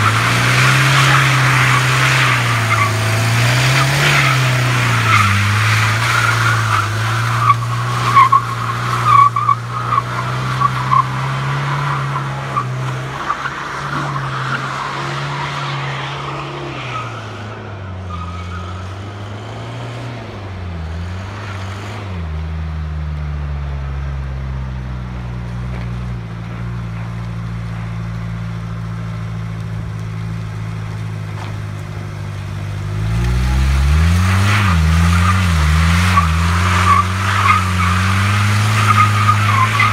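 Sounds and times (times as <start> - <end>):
diesel engine revving: 0.0 - 39.9
tyres squealing: 34.3 - 39.9.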